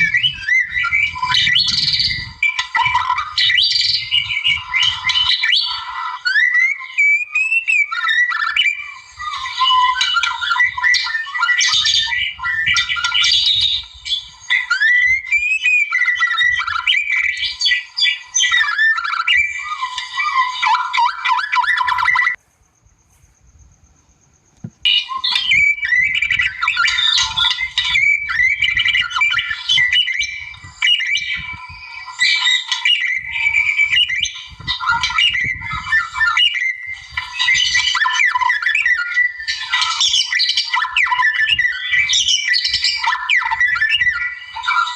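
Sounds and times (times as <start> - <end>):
bird singing whistles and chatters: 0.0 - 22.4, 24.4 - 44.9.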